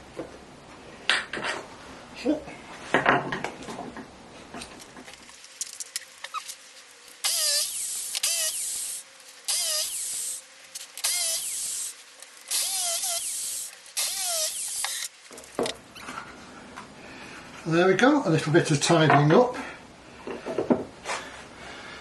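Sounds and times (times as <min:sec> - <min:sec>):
drill bit boring into wood: 0:07.2 - 0:10.4, 0:11.0 - 0:15.1.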